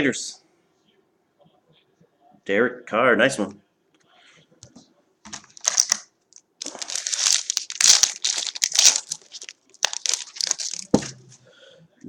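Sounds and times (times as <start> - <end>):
foil wrapper crinkling and tearing: 5.3 - 11.2.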